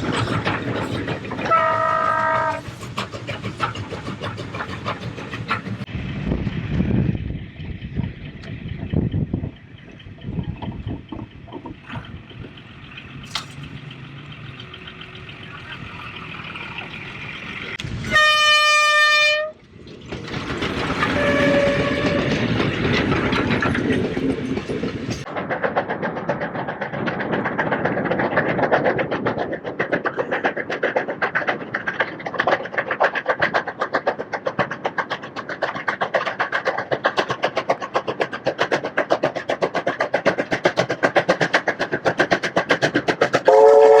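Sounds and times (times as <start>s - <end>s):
rhythmic clatter of passing train: 0.0s - 44.0s
steam locomotive running: 0.0s - 44.0s
steam whistle blast: 1.5s - 2.6s, 18.0s - 19.6s, 21.1s - 22.3s, 43.5s - 44.0s.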